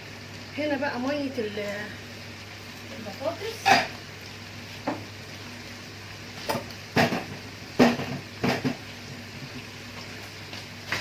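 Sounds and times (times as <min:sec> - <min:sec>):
kitchen pots and utensils clattering: 0:06.4 - 0:08.8.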